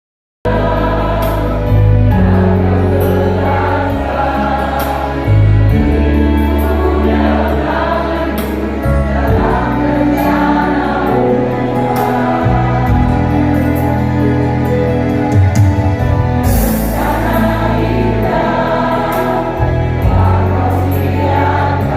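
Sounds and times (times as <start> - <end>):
choir singing: 0.5 - 21.9.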